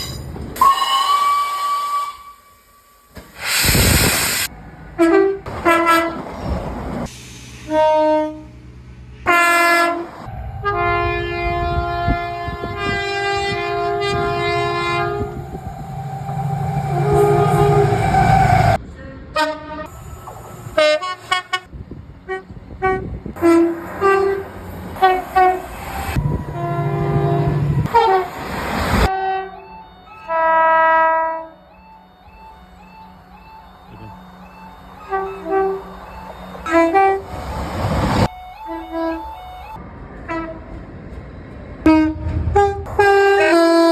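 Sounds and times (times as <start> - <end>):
train horns: 0.6 - 3.1, 4.8 - 6.6, 7.6 - 40.8, 41.8 - 43.9
train running rumble: 3.1 - 19.0, 32.4 - 38.7, 39.3 - 43.9.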